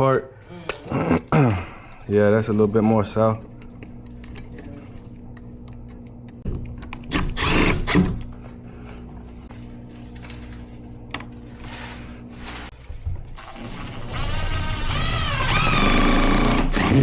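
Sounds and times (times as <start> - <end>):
steady low hum: 0.0 - 16.8
cordless drill running: 7.1 - 8.1, 13.4 - 17.0.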